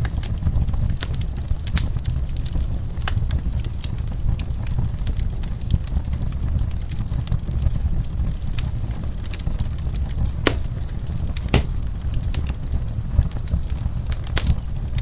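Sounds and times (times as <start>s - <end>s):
wood fire pops and snaps: 10.5s - 11.8s.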